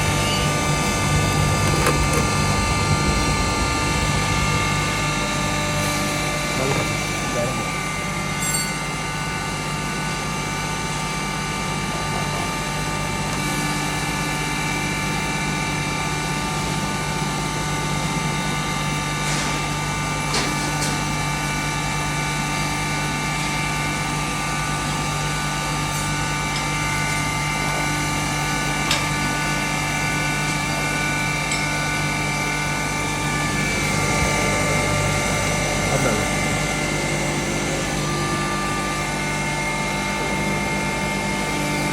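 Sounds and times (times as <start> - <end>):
grinding machine motor humming: 0.0 - 19.2, 21.1 - 41.9.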